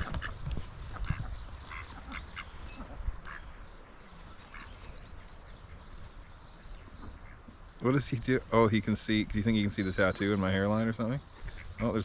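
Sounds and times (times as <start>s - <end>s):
ducks quacking: 0.0s - 12.0s.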